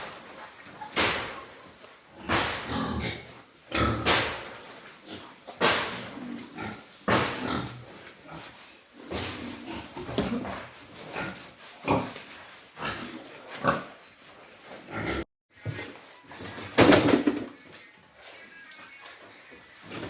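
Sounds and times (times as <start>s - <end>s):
pigs grunting: 0.0s - 14.0s, 14.6s - 15.9s.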